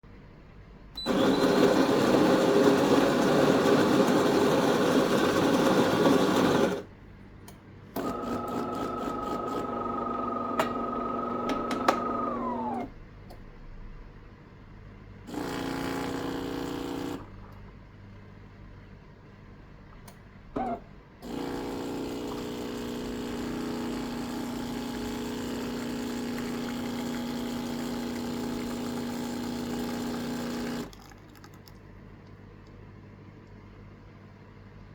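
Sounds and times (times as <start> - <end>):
espresso machine whirring: 1.0 - 6.9, 8.0 - 12.9, 15.3 - 17.3, 21.2 - 31.2.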